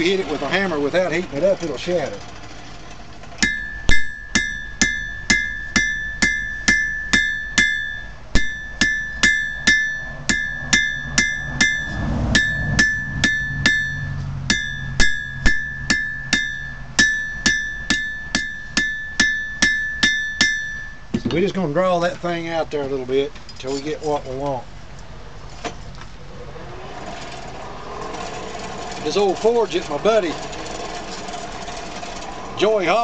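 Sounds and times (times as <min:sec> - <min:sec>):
hammer striking steel on anvil: 0:03.4 - 0:21.4.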